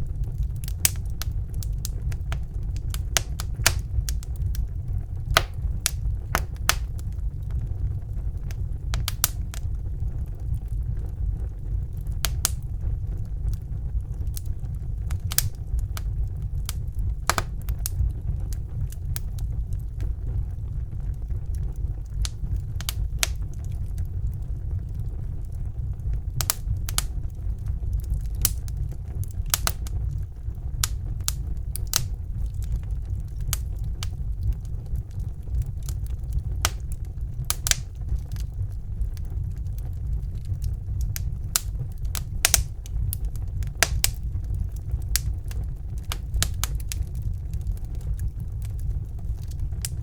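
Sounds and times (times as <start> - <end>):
fire crackling and popping: 0.0 - 50.0
low rumble of flames: 0.0 - 50.0.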